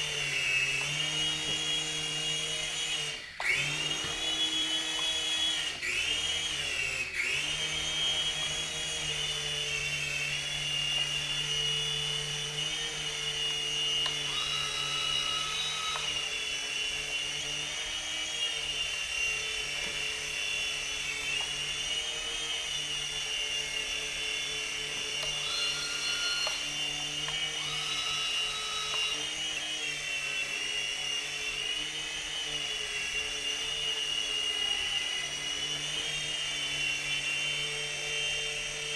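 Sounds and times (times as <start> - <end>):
rc helicopter whining in flight: 0.0 - 38.9
higher whining tone: 25.0 - 29.4.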